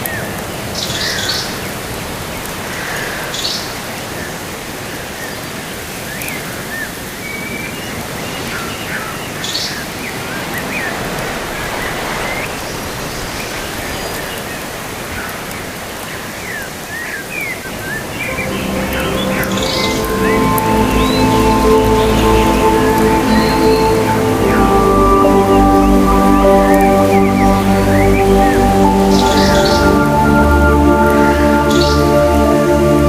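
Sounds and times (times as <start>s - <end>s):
steady rain falling: 0.0s - 33.0s
small birds chirping: 5.2s - 32.4s
music with sustained notes: 17.7s - 33.0s.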